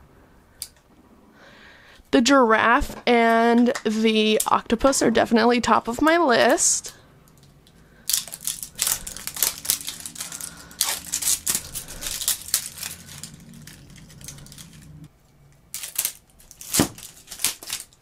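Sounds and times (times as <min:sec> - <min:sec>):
plastic packaging crinkling: 0:07.3 - 0:18.0.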